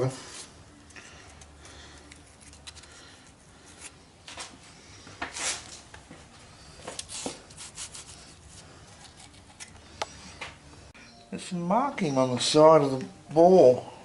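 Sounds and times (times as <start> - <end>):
hands scraping parts: 0.3 - 4.5, 6.8 - 10.2.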